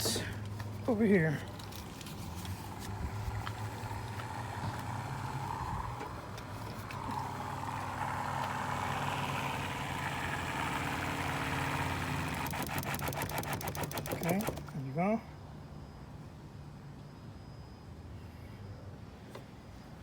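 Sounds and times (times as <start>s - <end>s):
electric water pump humming: 3.7s - 14.7s.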